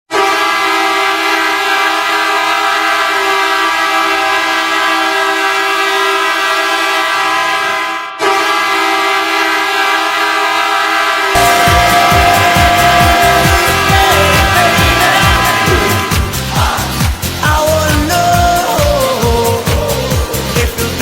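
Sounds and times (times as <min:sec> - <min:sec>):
hockey goal horn blaring: 0:00.1 - 0:16.4.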